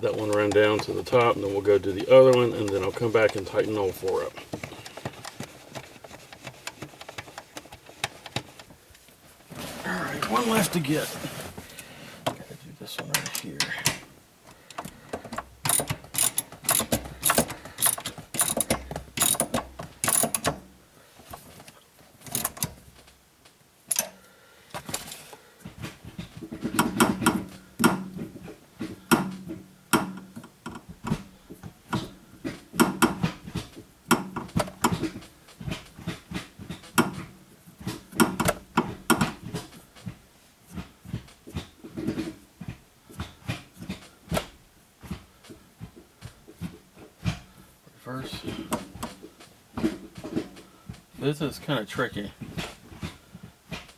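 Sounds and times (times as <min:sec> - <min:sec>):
ratchet wrench clicking: 0:15.6 - 0:20.5, 0:22.3 - 0:22.7, 0:23.9 - 0:24.1.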